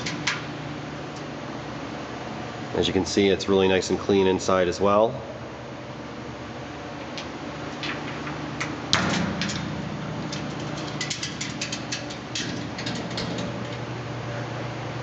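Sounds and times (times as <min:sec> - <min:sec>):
quick clicks and rattles: 0:07.2 - 0:13.9.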